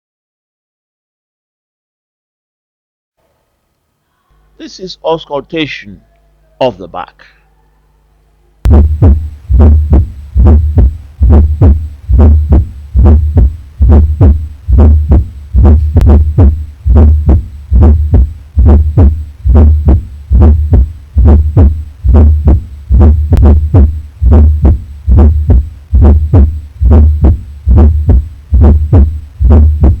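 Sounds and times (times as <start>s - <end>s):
heartbeat through stethoscope: 8.7s - 30.0s.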